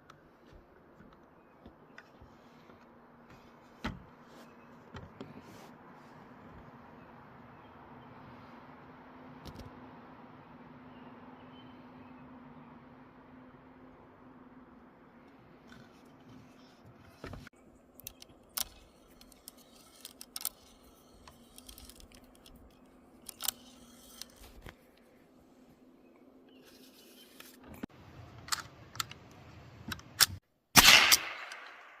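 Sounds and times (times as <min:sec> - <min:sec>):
rifle mechanical clicks: 0:18.0 - 0:24.4
rifle shot with echo: 0:30.8 - 0:32.0.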